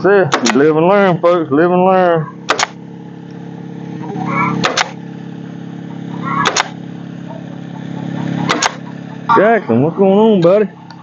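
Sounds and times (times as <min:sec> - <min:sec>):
air compressor running: 0:00.0 - 0:11.0
pneumatic staple gun firing: 0:00.3 - 0:00.7, 0:02.5 - 0:02.8, 0:04.6 - 0:05.0, 0:06.4 - 0:06.8, 0:08.5 - 0:08.8.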